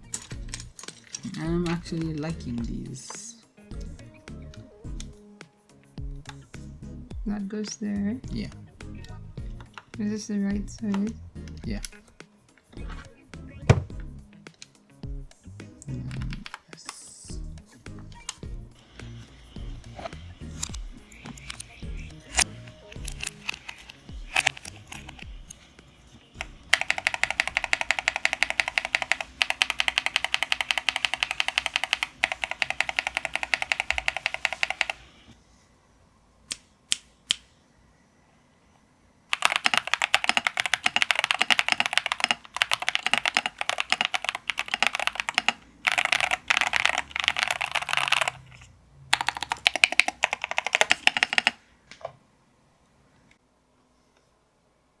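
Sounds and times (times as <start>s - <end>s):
mechanical keyboard key clacks: 20.6s - 25.3s, 26.4s - 35.0s, 39.3s - 51.6s.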